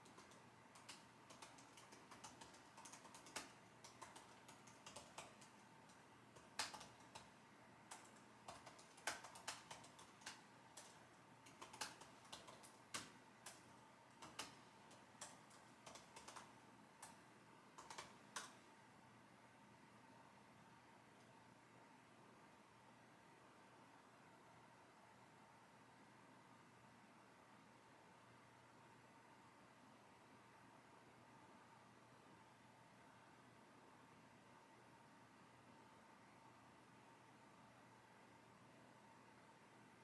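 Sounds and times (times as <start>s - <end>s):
computer keyboard typing: 0.0s - 18.6s.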